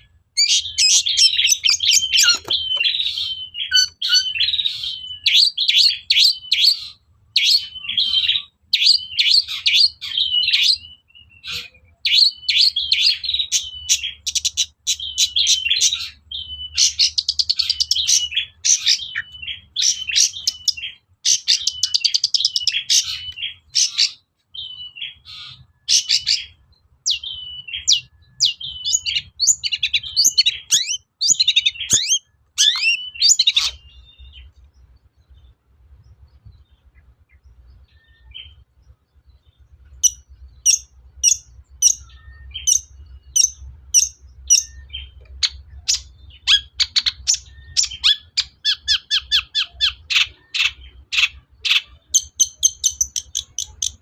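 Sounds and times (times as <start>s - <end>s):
bird chattering song: 0.0s - 54.0s.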